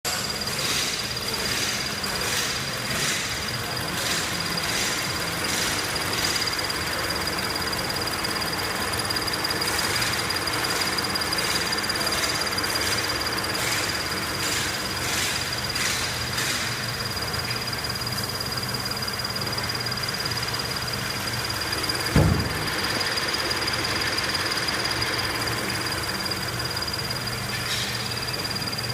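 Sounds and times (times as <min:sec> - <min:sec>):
car engine idling: 0:00.1 - 0:28.9
fuel pump squeak and chirps: 0:00.1 - 0:28.9
thump: 0:22.1 - 0:22.7.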